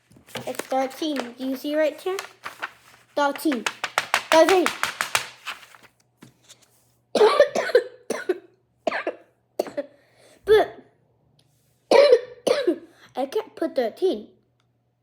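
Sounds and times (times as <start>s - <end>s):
girl coughing: 7.2s - 10.8s, 11.9s - 12.9s.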